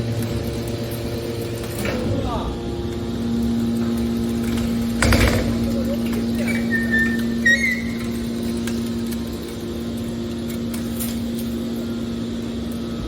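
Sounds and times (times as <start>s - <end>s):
hydraulic power unit humming: 0.0s - 13.0s
high metallic squeal: 6.4s - 8.6s.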